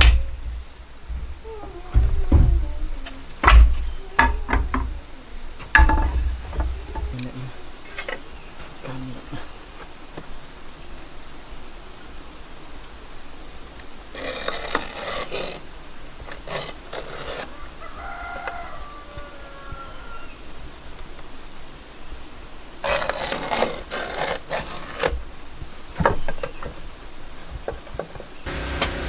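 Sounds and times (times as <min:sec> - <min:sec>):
knocks and thumps on wood: 0:00.0 - 0:07.2
rasping scrape on wood: 0:14.1 - 0:17.8, 0:22.8 - 0:25.2.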